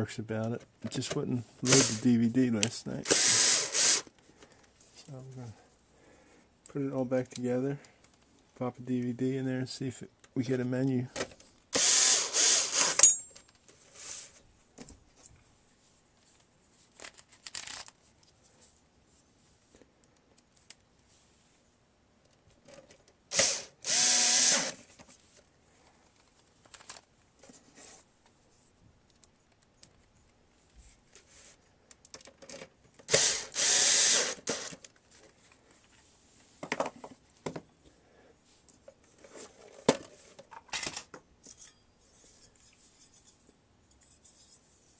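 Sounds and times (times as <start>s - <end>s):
power screwdriver running: 3.0s - 4.1s, 11.8s - 13.1s, 23.3s - 24.8s, 33.1s - 34.8s.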